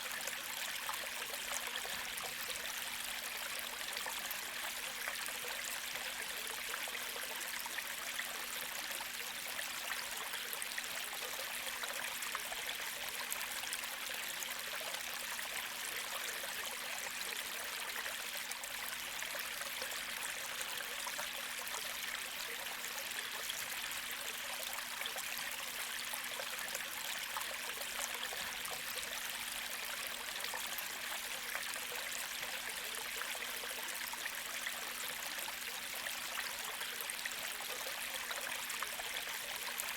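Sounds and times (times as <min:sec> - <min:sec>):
creek trickling and babbling: 0:00.0 - 0:39.9.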